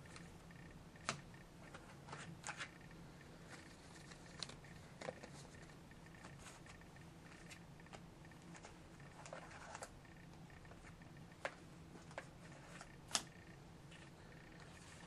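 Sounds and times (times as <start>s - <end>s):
low steady hum: 0.0s - 15.0s
cards clicking and tapping: 1.0s - 2.8s, 10.6s - 13.4s.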